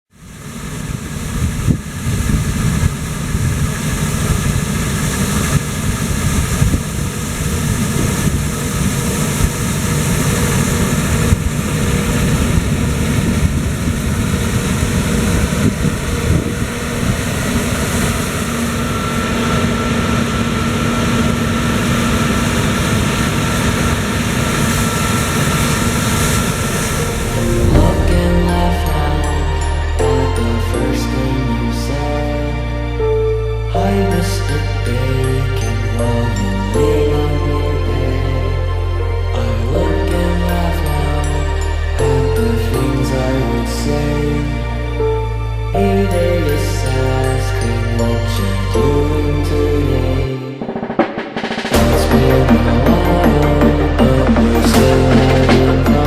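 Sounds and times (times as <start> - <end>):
steady higher hum: 0.2 - 33.0.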